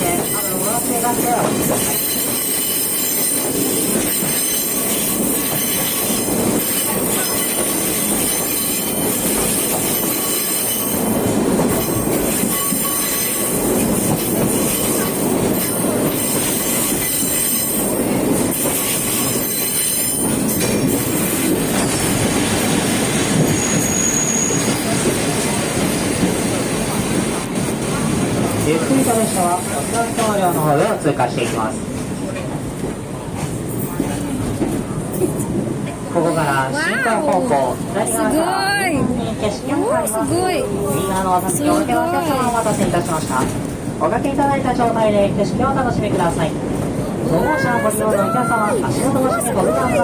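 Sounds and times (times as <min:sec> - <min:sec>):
train wheels rumbling on track: 0:00.0 - 0:50.0
high wheel squeal: 0:23.4 - 0:25.0.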